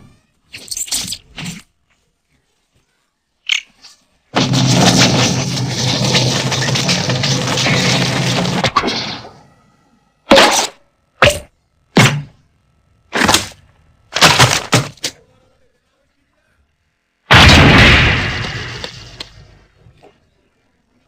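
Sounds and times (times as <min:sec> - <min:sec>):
loud cartoon crash: 0:04.4 - 0:09.4, 0:17.3 - 0:19.6.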